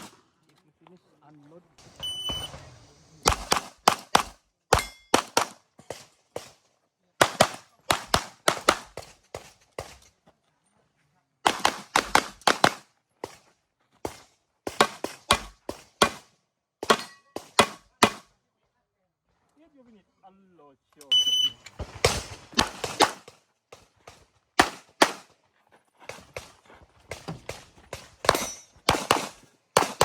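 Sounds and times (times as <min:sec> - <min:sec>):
pistol shots: 0:00.0 - 0:00.2, 0:03.2 - 0:06.5, 0:07.2 - 0:09.9, 0:11.5 - 0:12.8, 0:14.1 - 0:16.2, 0:16.8 - 0:18.3, 0:22.0 - 0:23.4, 0:24.6 - 0:25.3, 0:27.2 - 0:30.0
shot timer beep: 0:02.0 - 0:02.6, 0:21.1 - 0:21.6.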